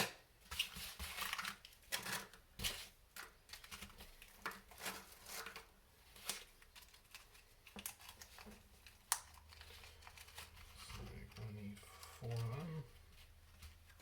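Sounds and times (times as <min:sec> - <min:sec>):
small screws clicking and rustling: 0:03.2 - 0:12.6.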